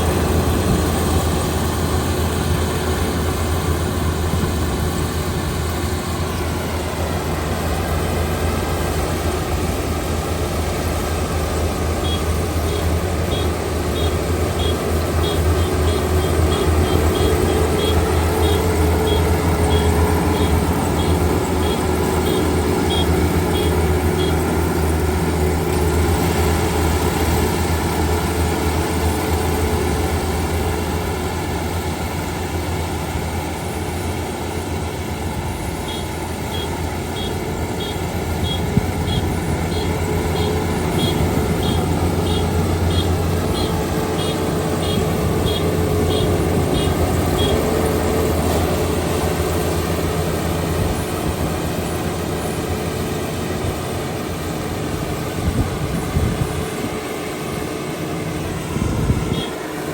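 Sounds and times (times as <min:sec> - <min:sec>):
combine harvester engine running: 0:00.0 - 0:59.9
rapid high-pitched beeping: 0:11.9 - 0:25.4, 0:34.6 - 0:49.2.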